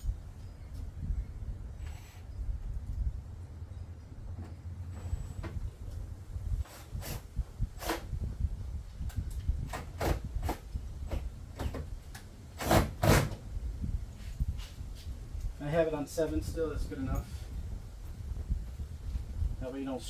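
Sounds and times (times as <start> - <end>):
drill-driver driving screws: 7.8 - 8.1.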